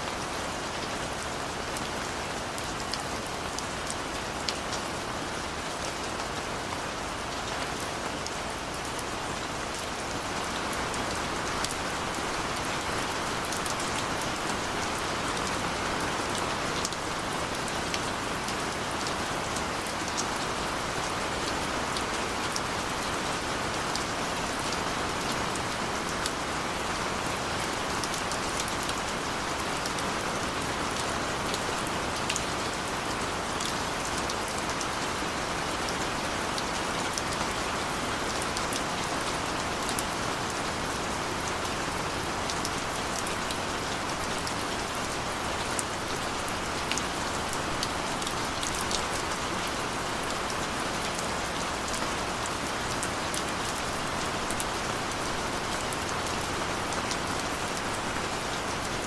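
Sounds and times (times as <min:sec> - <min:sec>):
gentle rain hiss: 0:00.0 - 0:59.0.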